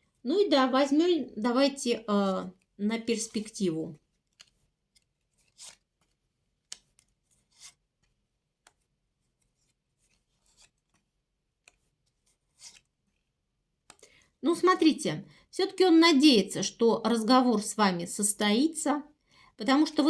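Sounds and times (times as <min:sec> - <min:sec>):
playing cards sliding and slapping: 0:04.1 - 0:13.3.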